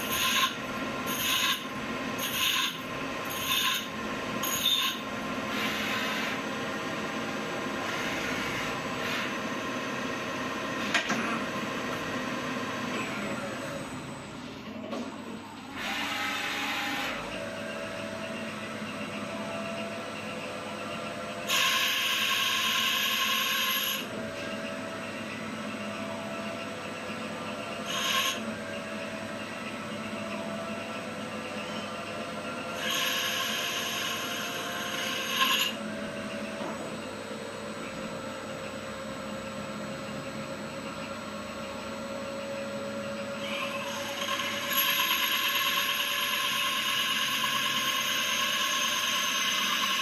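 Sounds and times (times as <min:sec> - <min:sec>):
high-pitched metal cutting noise: 0:00.0 - 0:06.4, 0:21.4 - 0:24.1, 0:27.8 - 0:28.5, 0:32.7 - 0:35.8, 0:43.4 - 0:50.0
lathe spindle humming: 0:21.5 - 0:27.0, 0:32.8 - 0:36.6, 0:42.5 - 0:50.0.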